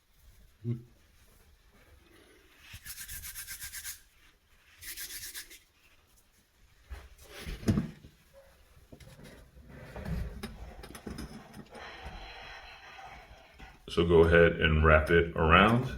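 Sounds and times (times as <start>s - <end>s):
hands rubbing putty: 2.6s - 4.1s, 4.7s - 6.0s.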